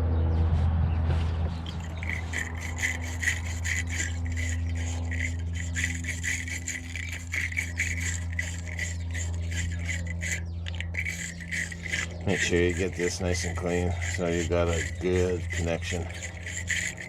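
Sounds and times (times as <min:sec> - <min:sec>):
steady low hum: 0:01.6 - 0:17.0
wire brush scrubbing metal: 0:01.7 - 0:17.0.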